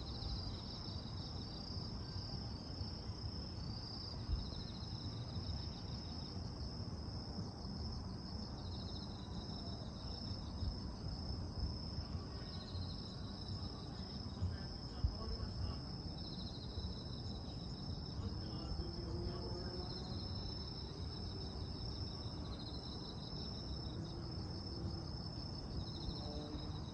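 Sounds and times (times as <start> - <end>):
short pulsed insect trills: 0.0 - 26.9
insects trilling: 11.9 - 26.9.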